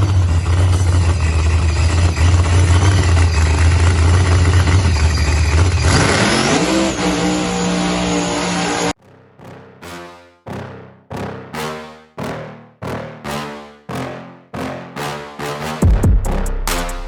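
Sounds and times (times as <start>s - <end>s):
engine running hard: 0.0s - 9.0s.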